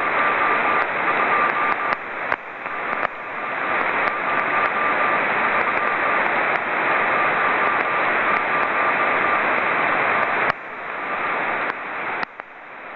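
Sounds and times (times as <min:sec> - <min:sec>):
morse code tone: 0:00.0 - 0:06.1
radio noise hiss: 0:00.0 - 0:12.9.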